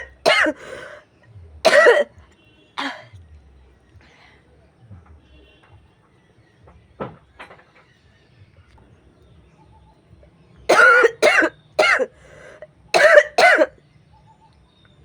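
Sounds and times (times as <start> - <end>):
woman coughing: 0.0 - 0.8, 1.7 - 2.1, 2.8 - 3.2, 10.7 - 12.1, 13.0 - 13.7.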